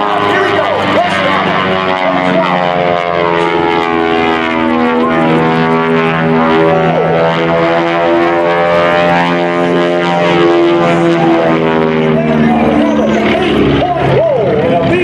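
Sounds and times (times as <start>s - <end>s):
aircraft engines droning: 0.0s - 15.0s.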